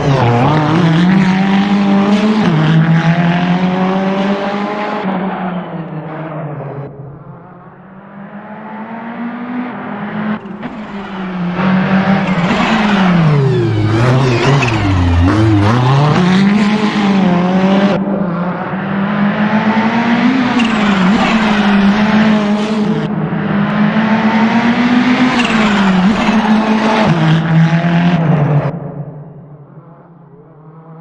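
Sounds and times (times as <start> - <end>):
race car engine at high revs: 0.0 - 29.0.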